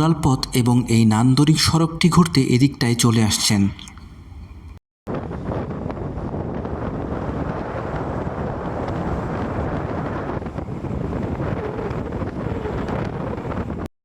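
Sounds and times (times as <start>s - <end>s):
wind buffeting microphone: 5.1s - 13.9s
vehicle rumbling along road: 5.6s - 13.8s.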